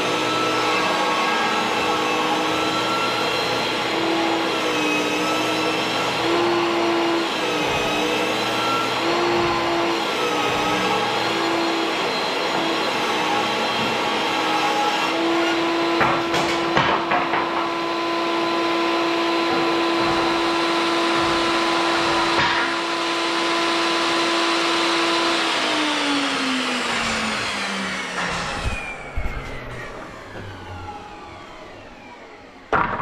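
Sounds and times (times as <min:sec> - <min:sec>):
knocks: 0:16.0 - 0:17.8, 0:19.5 - 0:22.8
motor winding down: 0:23.3 - 0:32.6.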